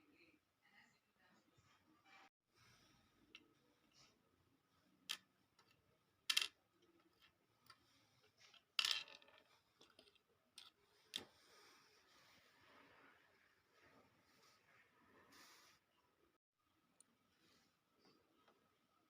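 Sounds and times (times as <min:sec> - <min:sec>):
parts clattering: 0:05.0 - 0:11.3.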